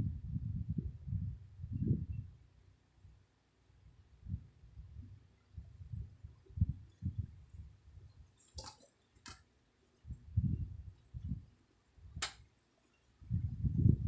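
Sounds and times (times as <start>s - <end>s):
sharp clicks: 12.2s - 12.5s.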